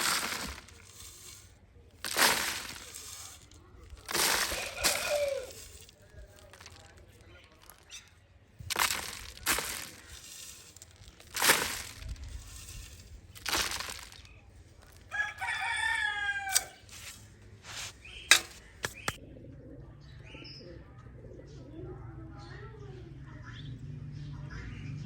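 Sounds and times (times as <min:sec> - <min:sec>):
rustling noise: 0:00.0 - 0:19.2.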